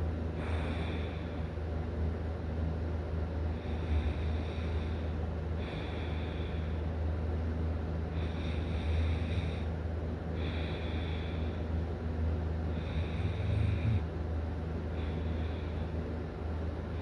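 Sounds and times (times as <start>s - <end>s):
steady low hum: 0.0s - 17.0s
person snoring: 12.8s - 14.1s.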